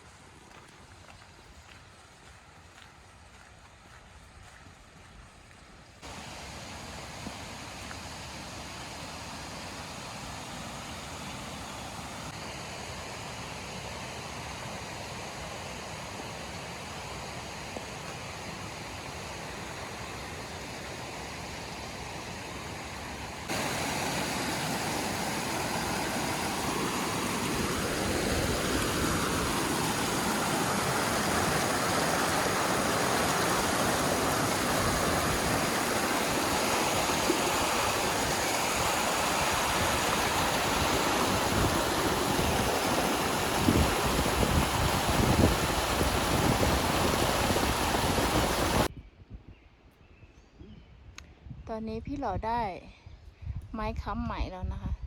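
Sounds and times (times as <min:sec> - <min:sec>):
stream water rushing: 0:06.0 - 0:48.9.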